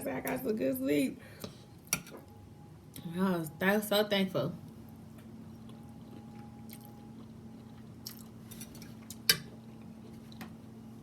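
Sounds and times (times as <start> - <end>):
faint steady hum: 0.0 - 11.0
soft chewing of food: 4.6 - 11.0.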